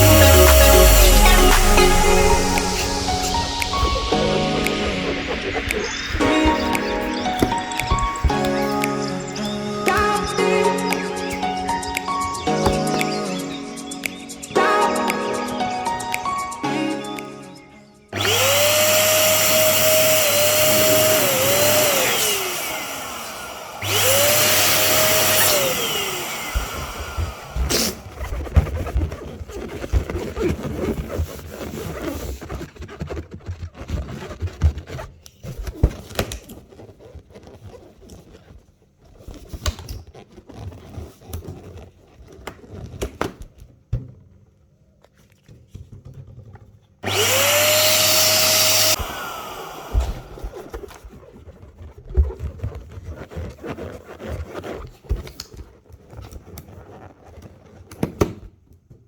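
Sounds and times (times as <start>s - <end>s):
electric balloon pump whine: 0.0s - 13.0s, 18.2s - 28.3s, 47.0s - 51.2s
balloons rubbing: 0.0s - 14.5s, 23.8s - 43.0s, 49.8s - 57.8s.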